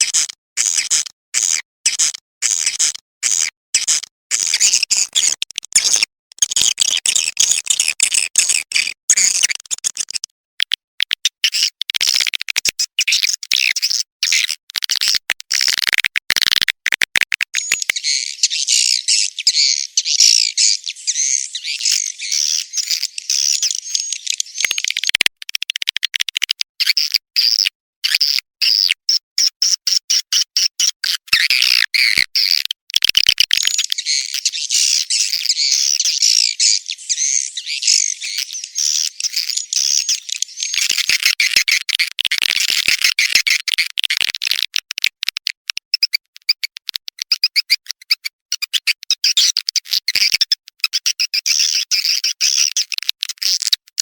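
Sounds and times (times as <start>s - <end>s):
swiftlets twittering and chirping: 17.5s - 25.2s, 33.2s - 43.7s, 51.2s - 53.6s.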